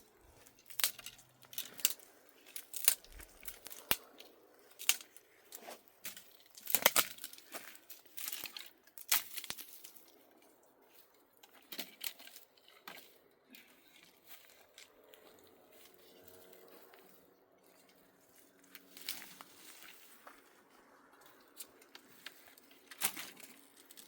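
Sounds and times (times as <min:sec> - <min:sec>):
rustling and tearing: 0:00.2 - 0:10.2, 0:18.7 - 0:20.4.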